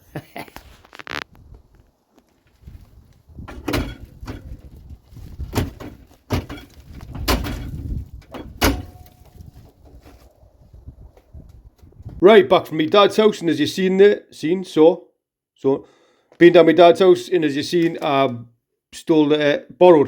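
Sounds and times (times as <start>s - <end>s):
rough handling noise: 0.5s - 10.4s
knocks and clunks: 3.4s - 10.0s.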